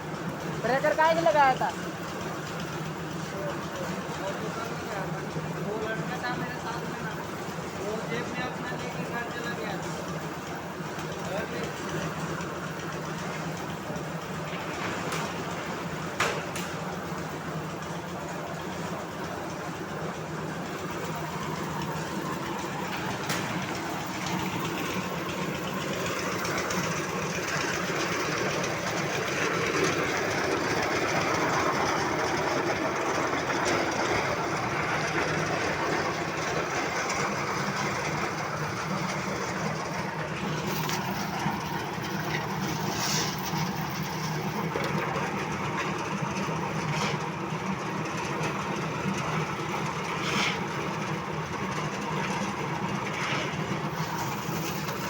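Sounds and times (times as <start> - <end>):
concrete mixer drum rumbling: 0.0 - 55.0.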